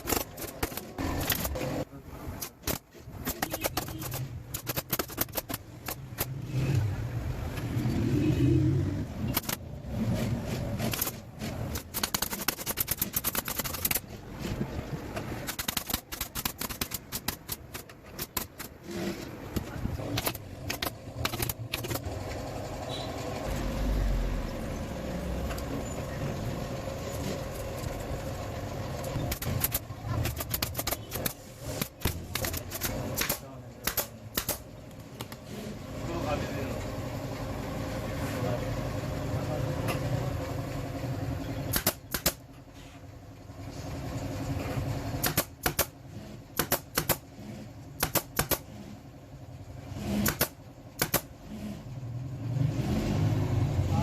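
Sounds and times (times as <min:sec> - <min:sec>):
hand tools clicking and knocking: 0:00.0 - 0:01.8, 0:02.4 - 0:06.4, 0:10.5 - 0:22.4, 0:29.0 - 0:35.4.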